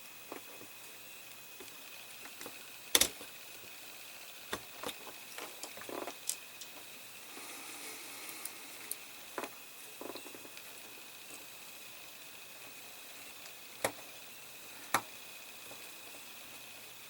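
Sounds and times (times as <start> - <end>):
model parts clicking and tapping: 1.6 - 3.3, 4.5 - 6.9, 13.4 - 14.0.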